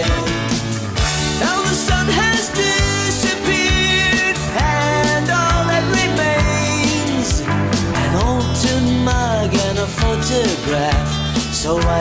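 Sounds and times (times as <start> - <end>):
regular drum beat: 0.0 - 12.0
song with sung vocal and band: 0.0 - 12.0.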